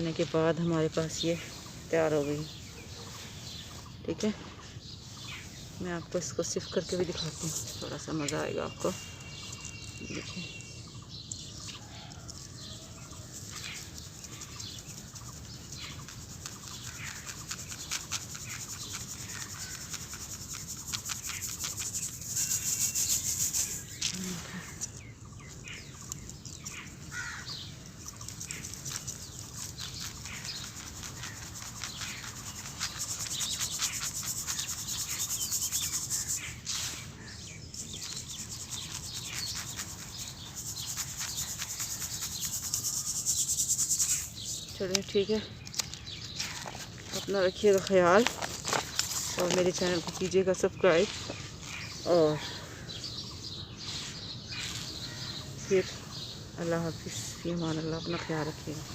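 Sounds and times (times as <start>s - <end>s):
cement powder sifting through sieve: 12.6s - 24.8s, 28.5s - 37.1s, 37.8s - 45.2s.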